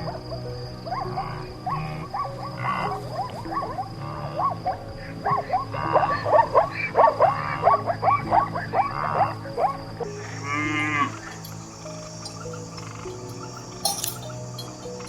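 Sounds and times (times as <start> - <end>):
background music drone: 0.0 - 15.0.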